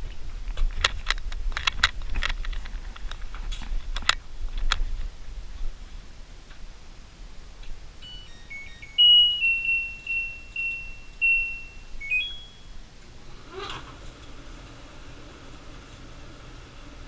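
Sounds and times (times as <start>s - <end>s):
electronic chime tune: 8.0s - 12.9s.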